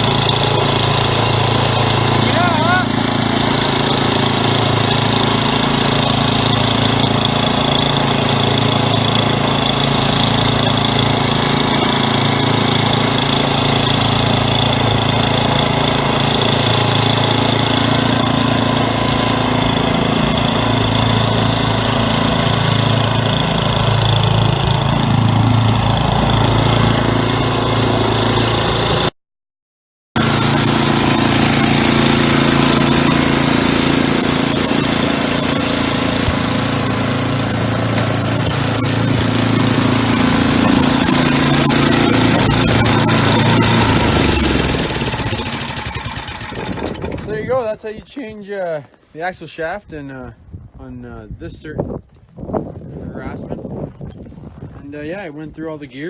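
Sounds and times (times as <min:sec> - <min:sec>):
snowblower engine running: 0:00.0 - 0:29.1, 0:30.2 - 0:49.0.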